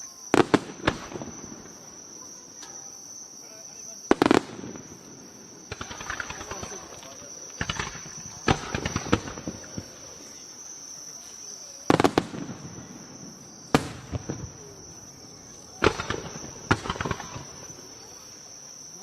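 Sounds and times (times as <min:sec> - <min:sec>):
firework crackling: 0:00.0 - 0:02.0, 0:04.0 - 0:10.6, 0:11.7 - 0:18.5
crickets trilling: 0:00.0 - 0:19.0
firework shells bursting: 0:04.1 - 0:10.2, 0:13.6 - 0:18.2.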